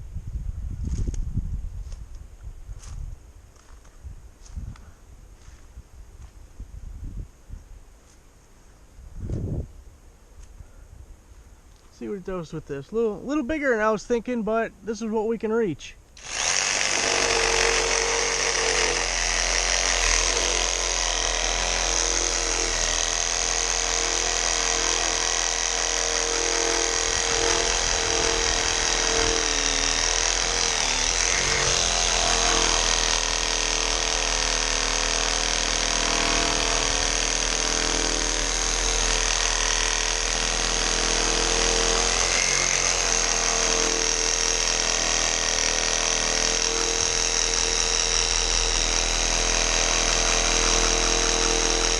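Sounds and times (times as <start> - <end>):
reciprocating saw motor whine: 16.2 - 51.9
saw blade rasping through wood: 16.2 - 51.9.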